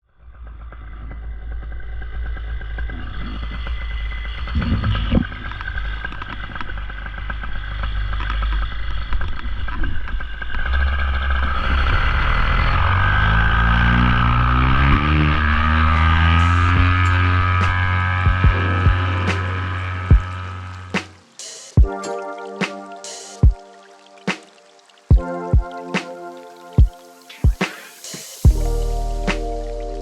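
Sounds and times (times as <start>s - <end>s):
paramotor engine running: 0.4s - 21.4s.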